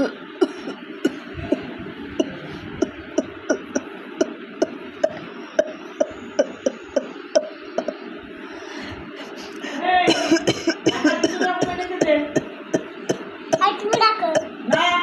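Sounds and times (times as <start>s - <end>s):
person coughing: 10.1s - 12.5s.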